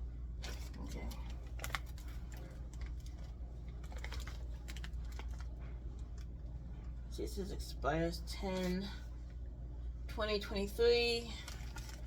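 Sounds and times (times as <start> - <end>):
steady low hum: 0.0 - 12.0
food packages crinkling and clicking: 0.4 - 6.5, 11.3 - 12.0.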